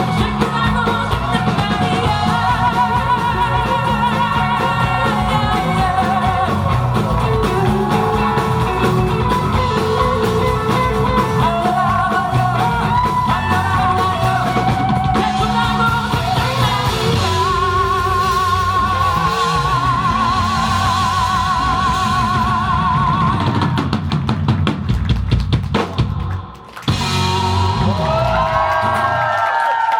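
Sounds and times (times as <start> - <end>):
man singing: 0.0 - 23.8
live pop-rock band: 0.0 - 29.8.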